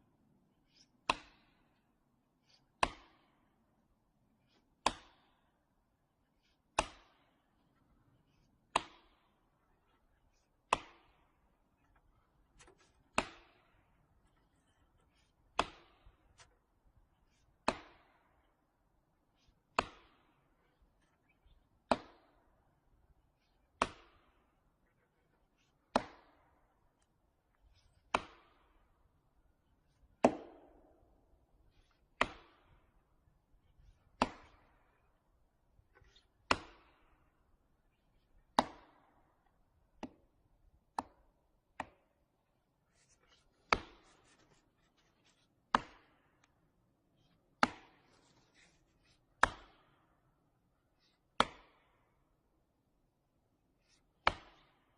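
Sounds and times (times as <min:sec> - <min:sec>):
chopping blows on wood: 0:01.0 - 0:01.5, 0:06.8 - 0:07.2, 0:10.7 - 0:11.2, 0:12.6 - 0:13.6, 0:15.6 - 0:16.2, 0:17.6 - 0:18.1, 0:21.9 - 0:22.3, 0:23.8 - 0:24.3, 0:25.9 - 0:26.4, 0:28.1 - 0:28.6, 0:30.2 - 0:30.9, 0:32.2 - 0:32.8, 0:34.2 - 0:34.7, 0:36.5 - 0:37.0, 0:38.6 - 0:39.1, 0:43.7 - 0:44.0, 0:45.7 - 0:46.2, 0:47.6 - 0:48.2, 0:49.4 - 0:49.8, 0:51.4 - 0:51.8, 0:54.2 - 0:54.7.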